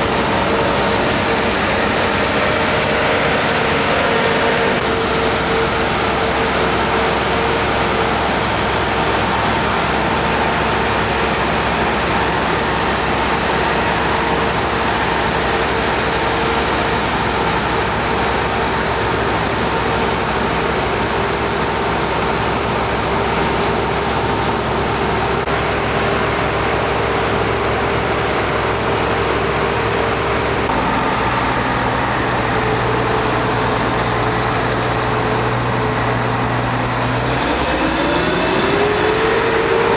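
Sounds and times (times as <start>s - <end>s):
constant machine whine: 0.0s - 39.9s
diesel engines running: 0.0s - 39.9s
lower engine note: 0.0s - 39.9s.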